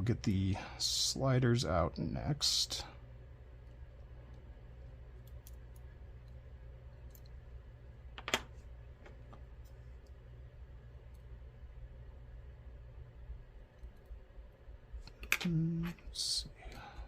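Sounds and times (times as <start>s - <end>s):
low steady hum: 0.0s - 17.0s
lock parts clicking and tapping: 8.2s - 9.4s.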